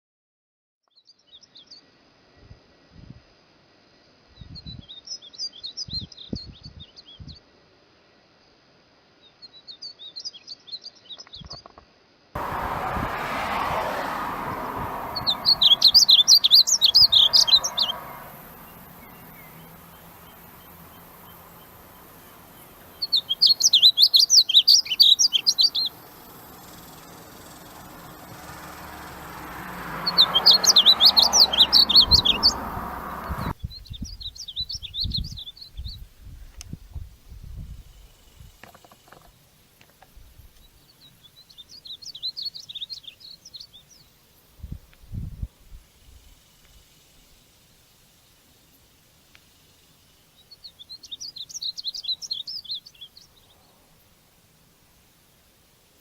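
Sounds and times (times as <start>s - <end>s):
songbird chirping: 12.4s - 36.8s, 37.9s - 45.2s, 47.9s - 56.0s
steady hiss: 17.9s - 29.4s, 35.5s - 56.0s.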